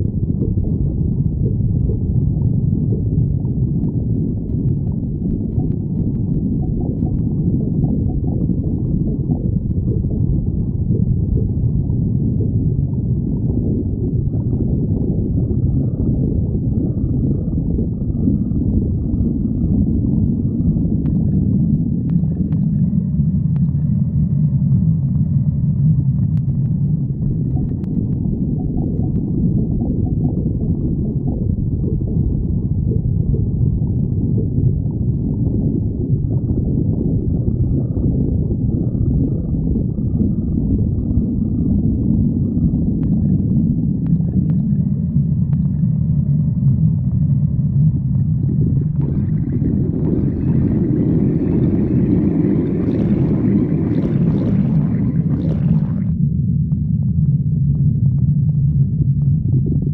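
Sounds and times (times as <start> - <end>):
stomach growling: 0.0 - 56.2.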